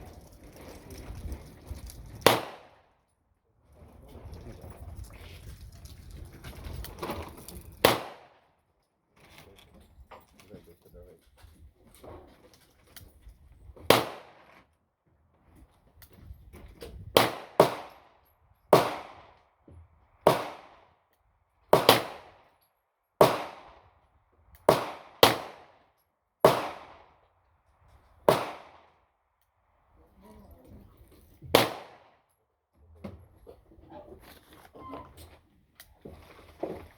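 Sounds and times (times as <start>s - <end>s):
gunshots with echo: 26.4s - 27.0s, 28.3s - 28.8s.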